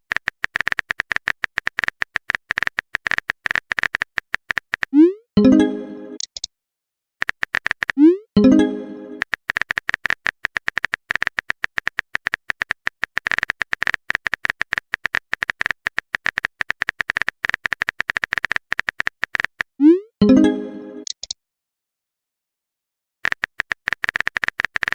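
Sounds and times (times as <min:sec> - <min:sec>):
phone keyboard typing clicks: 0:00.0 - 0:05.0, 0:06.2 - 0:06.5, 0:07.2 - 0:08.0, 0:09.1 - 0:19.7, 0:21.0 - 0:21.4, 0:23.2 - 0:24.9
message sent alert tone: 0:05.0 - 0:06.2, 0:08.0 - 0:09.2, 0:20.2 - 0:21.1.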